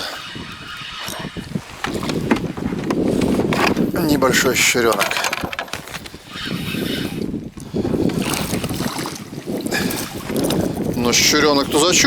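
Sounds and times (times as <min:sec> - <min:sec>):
water splashing around boat: 0:00.0 - 0:12.0
wind buffeting microphone: 0:00.0 - 0:12.0.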